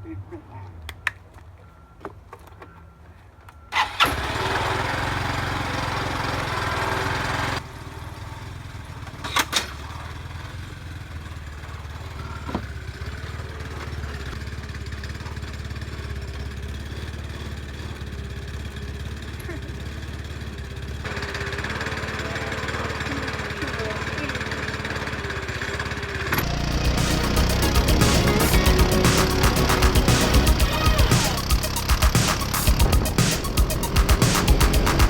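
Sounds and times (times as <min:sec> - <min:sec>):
scooter engine starting and idling: 0:03.7 - 0:35.0
sharp clicks: 0:26.3 - 0:35.0.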